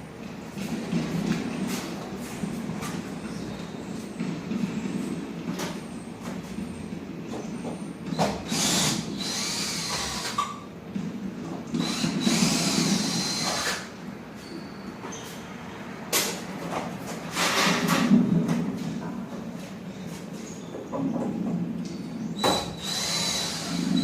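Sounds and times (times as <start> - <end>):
cordless drill whining: 8.5 - 10.4, 11.8 - 13.9, 22.5 - 24.0.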